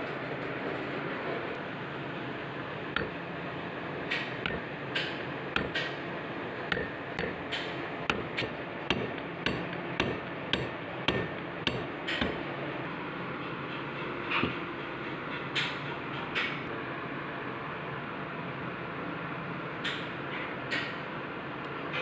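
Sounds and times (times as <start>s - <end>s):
steady background noise: 0.0s - 22.0s
hammer striking metal parts: 3.0s - 3.2s, 4.1s - 6.0s, 6.7s - 12.5s.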